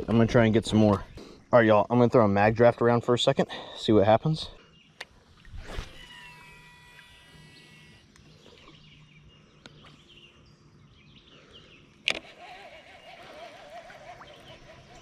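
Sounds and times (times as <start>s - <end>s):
steady low hum: 0.0s - 12.1s
faint wavering tone: 5.4s - 9.1s
faint bird calls: 11.0s - 15.0s.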